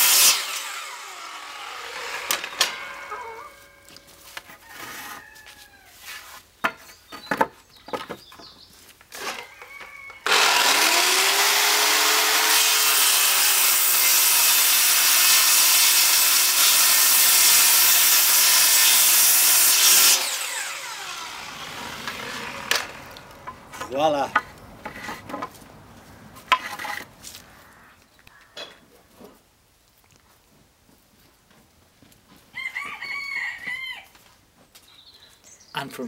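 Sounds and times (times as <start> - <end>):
power saw cutting wood: 0.0 - 4.0, 9.1 - 9.5, 10.2 - 25.5.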